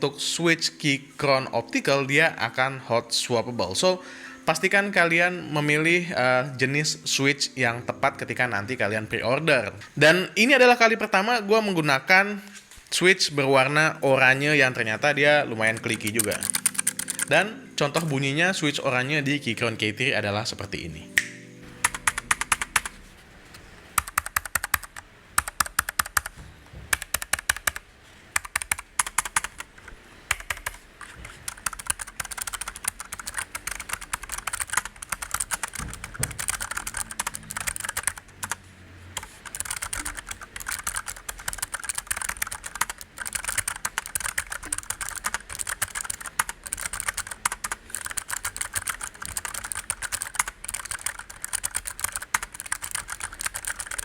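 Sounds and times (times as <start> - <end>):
mechanical keyboard typing: 14.6 - 18.2, 21.7 - 23.1, 23.9 - 54.0.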